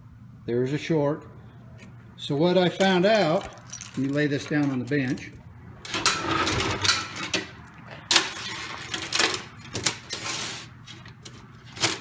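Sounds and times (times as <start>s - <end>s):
chain links clinking and rattling: 2.8s - 5.3s.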